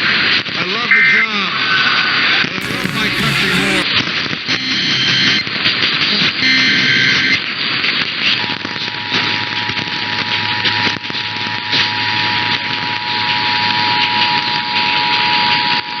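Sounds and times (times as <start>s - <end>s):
broadcast hiss: 2.6s - 3.8s
two-tone alert signal: 2.6s - 3.8s.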